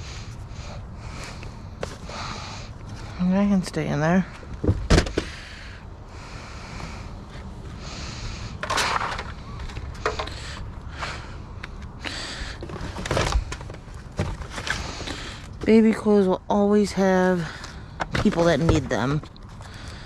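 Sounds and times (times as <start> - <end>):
rustling and handling noise: 0.0 - 5.4, 7.2 - 16.0
steady low rumble: 0.0 - 18.1.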